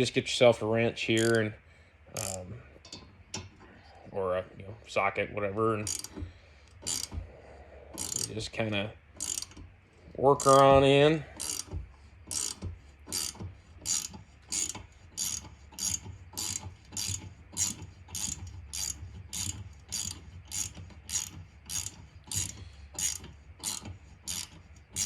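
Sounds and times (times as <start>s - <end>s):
ratchet wrench clicking: 1.1s - 1.5s, 2.2s - 3.5s, 5.8s - 7.2s, 8.0s - 8.5s, 9.2s - 9.7s, 10.4s - 10.8s, 11.4s - 25.0s.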